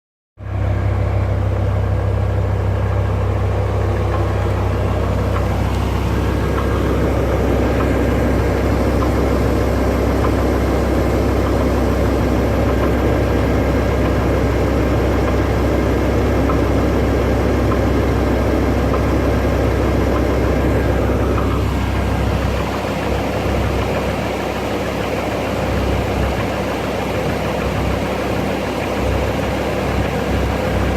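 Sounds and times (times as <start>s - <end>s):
car engine running: 0.4s - 30.9s
slow engine knocking: 0.4s - 30.9s.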